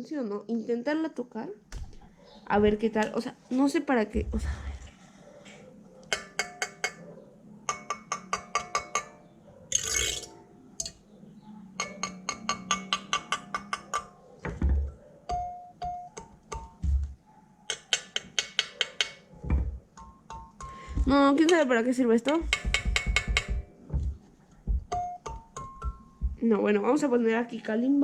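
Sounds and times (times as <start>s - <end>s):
dull handling thumps: 1.7s - 2.8s, 16.6s - 17.2s, 19.4s - 19.9s, 20.8s - 26.5s
kalimba notes plucked: 24.9s - 26.4s.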